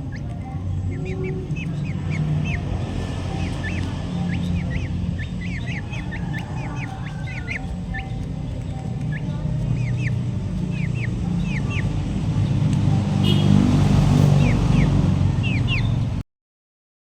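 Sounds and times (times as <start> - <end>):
falling bird chirps: 0.0 - 16.1
low engine rumble: 0.0 - 16.2.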